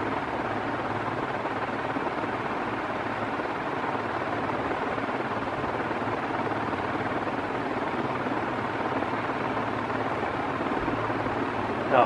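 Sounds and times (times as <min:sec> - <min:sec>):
ceiling fan motor humming: 0:00.0 - 0:12.0
fan blades whooshing: 0:06.8 - 0:12.0.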